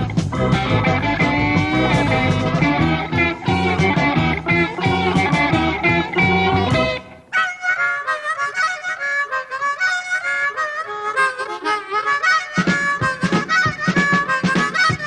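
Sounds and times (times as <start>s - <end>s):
drums steady beat: 0.0s - 7.0s, 12.6s - 15.0s
bass: 0.0s - 7.3s
lead instrument melody: 0.0s - 15.0s.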